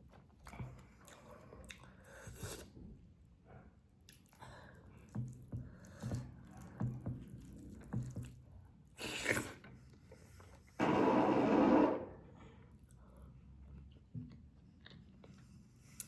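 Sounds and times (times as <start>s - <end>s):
close chewing mouth sounds: 0.2s - 2.8s
loud noise: 10.8s - 12.1s.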